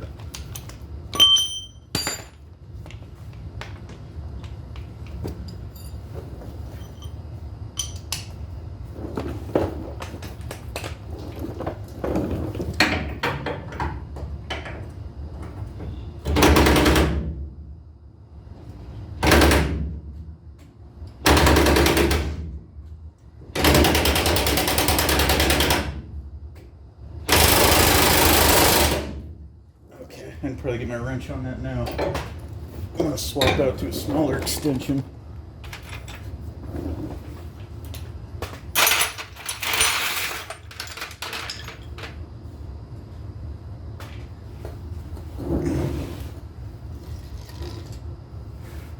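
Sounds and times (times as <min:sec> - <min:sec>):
tools clinking on metal: 0:00.5 - 0:02.4, 0:07.8 - 0:08.2.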